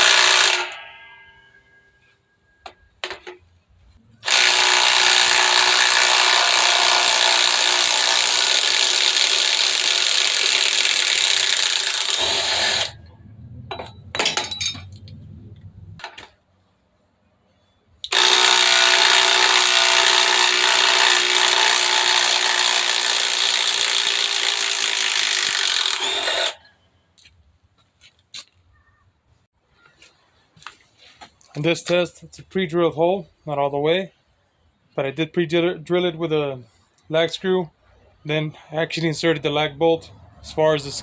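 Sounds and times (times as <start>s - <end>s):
impact driver hammering: 0.0s - 0.8s, 18.1s - 26.6s.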